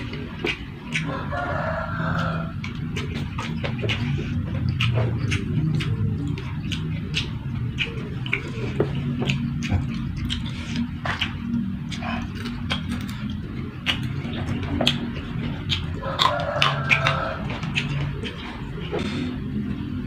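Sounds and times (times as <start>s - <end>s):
chewing and mouth smacks: 0.0s - 19.9s
low hum: 0.0s - 20.0s.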